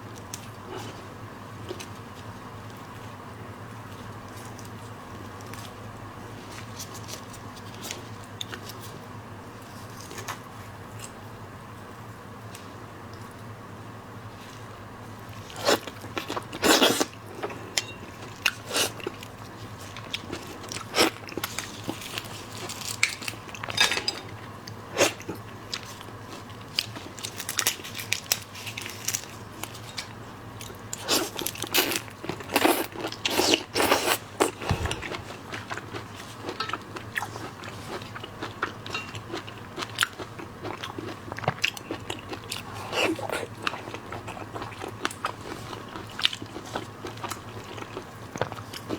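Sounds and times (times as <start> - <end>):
crunchy bites and chewing: 30.6 - 38.8.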